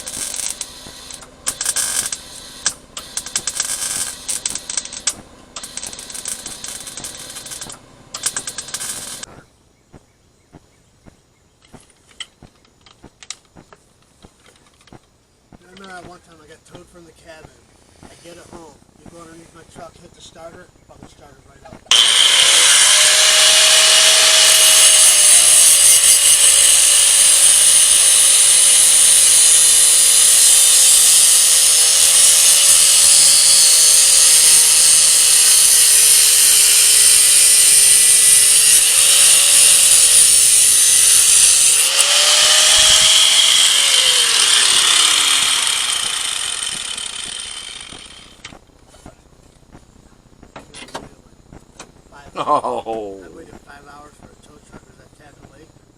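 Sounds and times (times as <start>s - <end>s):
power grinder grinding metal: 0.0s - 9.4s, 21.9s - 48.6s.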